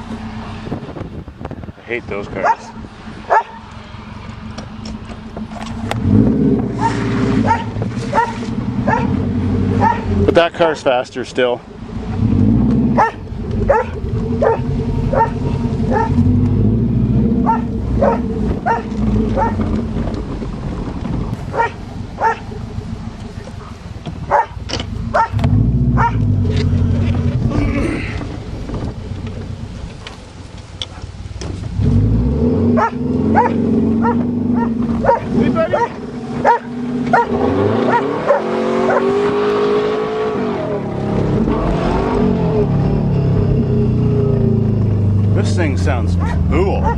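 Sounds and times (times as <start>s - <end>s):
car engine running: 0.0s - 46.9s
dog barking: 2.4s - 3.6s, 6.8s - 9.2s, 9.8s - 10.1s, 13.0s - 16.2s, 17.4s - 19.6s, 21.5s - 22.5s, 24.3s - 25.4s, 26.0s - 26.2s, 32.8s - 39.1s, 46.2s - 46.9s.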